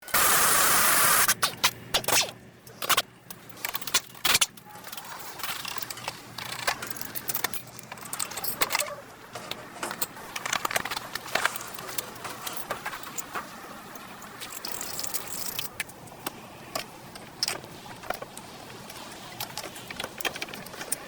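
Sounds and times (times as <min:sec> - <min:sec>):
loud burst of noise: 0:00.1 - 0:01.4
metal tools clinking and scraping: 0:02.8 - 0:13.4, 0:14.0 - 0:16.0.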